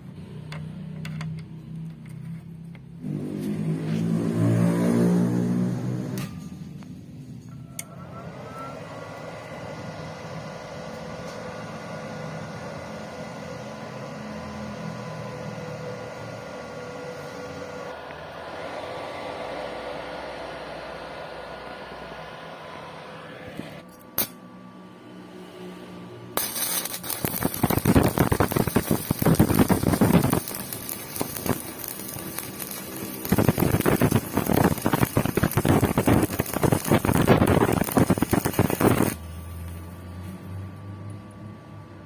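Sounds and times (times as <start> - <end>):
welding arc crackling: 26.4 - 40.0.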